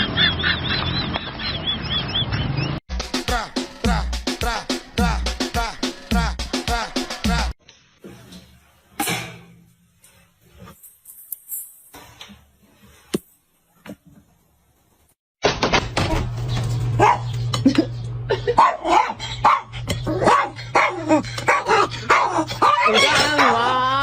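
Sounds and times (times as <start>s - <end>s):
dog barking and whimpering: 16.9s - 17.4s, 18.5s - 23.8s.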